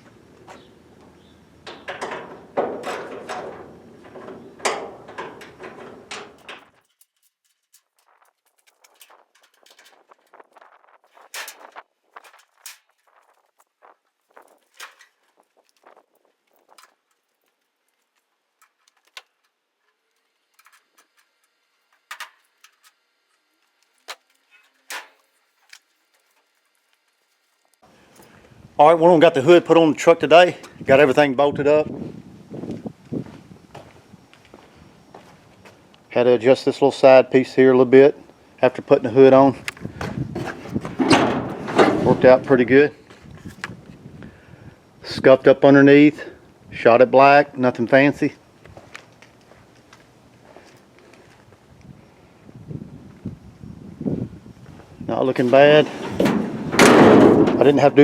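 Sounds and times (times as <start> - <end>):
metal clanks and knocks: 0.4 - 6.9, 40.0 - 42.5, 55.8 - 58.0
hand tools clicking and knocking: 0.4 - 10.4.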